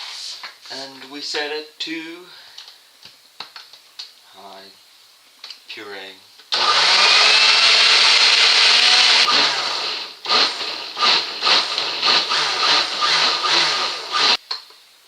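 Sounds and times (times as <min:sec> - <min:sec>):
electric blender running: 0:06.5 - 0:14.4.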